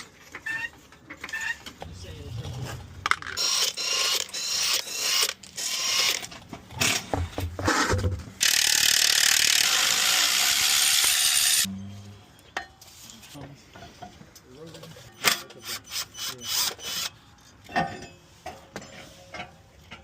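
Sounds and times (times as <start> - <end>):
ratchet wrench strokes: 3.4 - 6.3, 8.4 - 11.7, 15.3 - 17.1
loud steady tool noise: 8.4 - 11.7.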